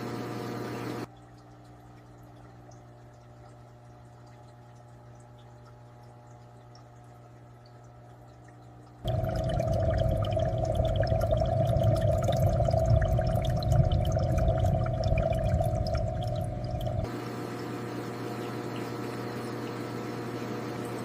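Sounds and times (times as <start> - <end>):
water bubbling in an aquarium: 0.2 - 21.0
faint low hum: 1.1 - 17.1.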